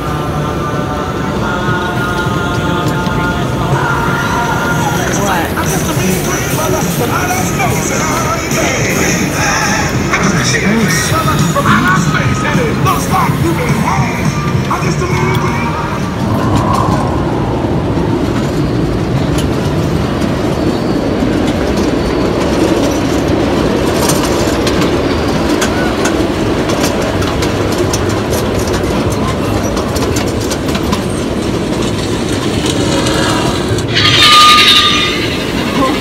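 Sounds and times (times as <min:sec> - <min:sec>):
miniature train rumbling: 0:00.0 - 0:36.0
wheels clacking over rails: 0:18.1 - 0:36.0.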